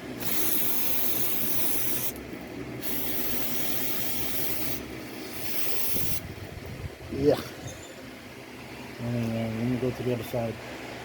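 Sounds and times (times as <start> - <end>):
aerosol spray hissing: 0.2 - 2.2, 2.8 - 6.2.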